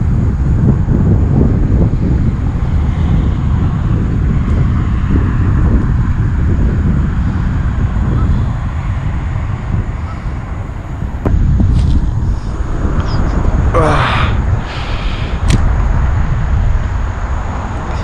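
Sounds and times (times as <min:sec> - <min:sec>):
wind buffeting microphone: 0:00.0 - 0:18.0
sharp click: 0:15.4 - 0:15.7.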